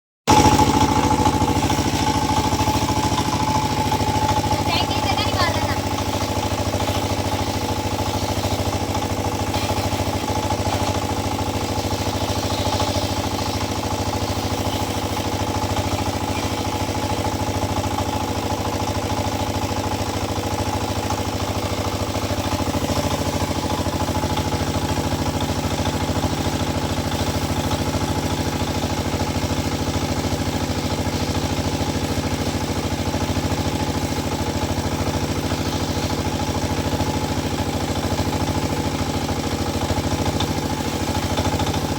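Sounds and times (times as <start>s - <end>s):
diesel tractor engine idling: 0.3s - 41.9s.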